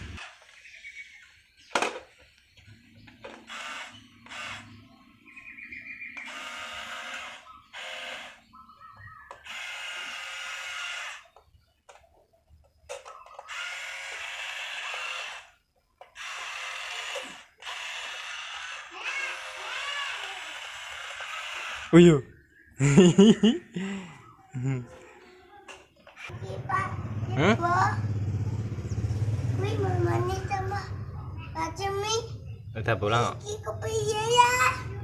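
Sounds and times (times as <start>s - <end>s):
small electric motors whirring: 2.6s - 5.4s, 6.0s - 12.0s, 12.9s - 22.2s.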